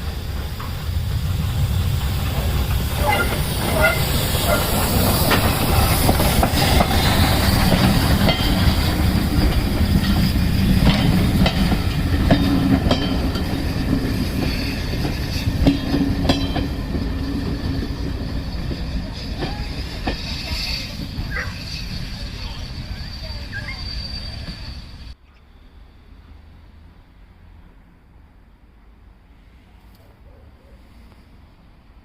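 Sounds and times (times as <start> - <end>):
wheels clicking over rail joints: 0.0 - 24.6
steam hiss: 0.0 - 25.2
steam train rumbling past: 0.0 - 29.8
wavering squeal: 2.4 - 12.1, 17.3 - 25.8.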